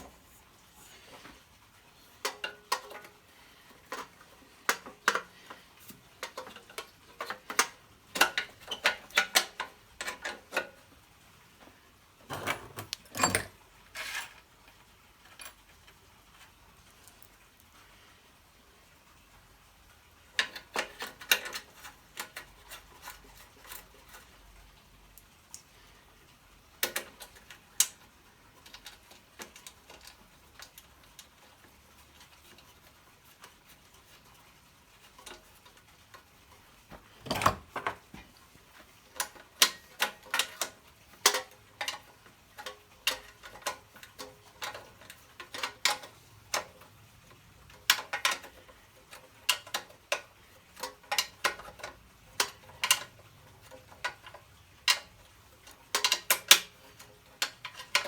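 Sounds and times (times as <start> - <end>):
hand tools tapping on metal: 2.2 - 3.2, 3.8 - 10.8, 12.3 - 14.3, 47.8 - 58.0.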